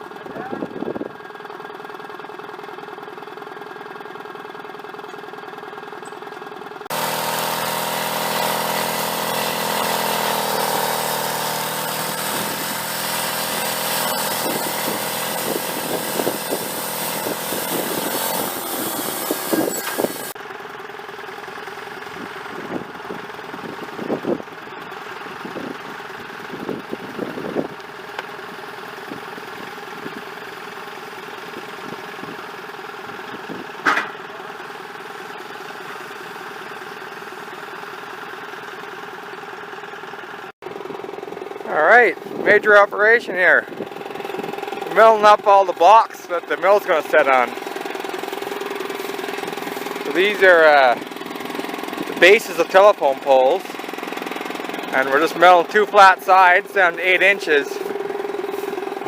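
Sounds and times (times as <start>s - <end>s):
sawmill engine running: 0.8s - 59.0s
saw blade cutting whine: 6.9s - 20.4s, 44.5s - 53.8s, 54.5s - 59.0s.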